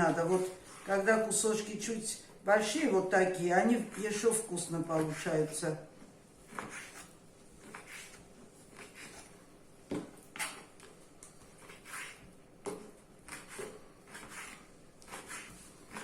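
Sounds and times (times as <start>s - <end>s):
knife cutting meat on board: 11.6s - 16.0s.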